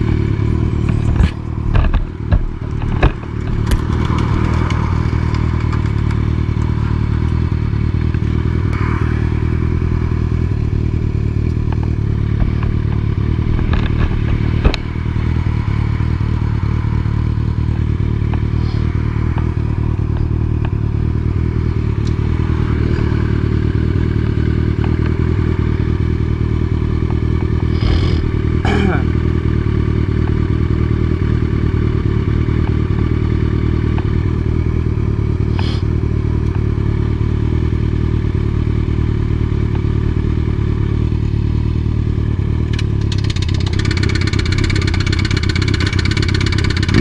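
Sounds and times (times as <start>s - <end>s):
motorcycle engine running: 0.0s - 47.0s
clattering engine knocks: 0.8s - 7.1s.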